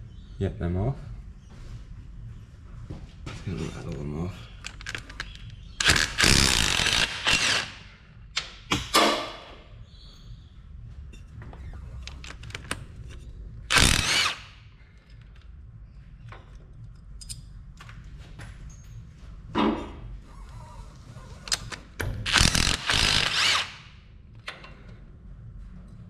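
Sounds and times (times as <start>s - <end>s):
impact wrench hammering bursts: 5.8s - 7.9s, 13.7s - 14.6s, 22.3s - 23.9s.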